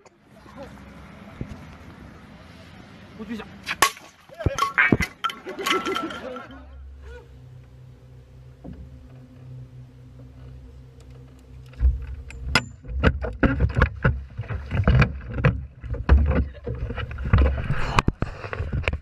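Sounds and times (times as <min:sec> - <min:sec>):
steady low hum: 0:00.0 - 0:19.0
water splashes: 0:03.6 - 0:06.4
knocks and thumps in a boat: 0:08.5 - 0:19.0.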